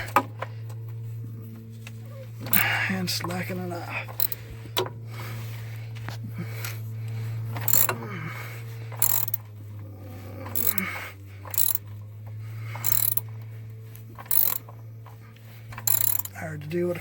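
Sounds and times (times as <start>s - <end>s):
ratchet clicking: 2.4s - 2.8s, 4.1s - 4.9s, 7.5s - 8.0s, 8.9s - 9.5s, 10.4s - 12.0s, 12.7s - 13.4s, 14.0s - 16.4s.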